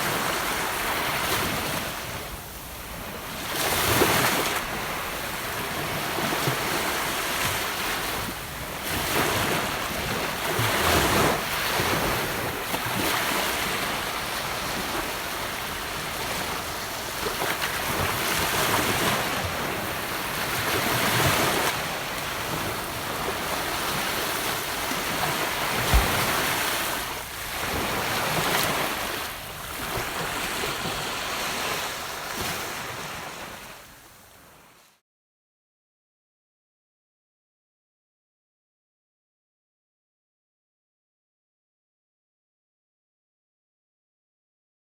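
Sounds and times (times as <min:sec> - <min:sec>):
ocean waves washing on beach: 0:00.0 - 0:34.9.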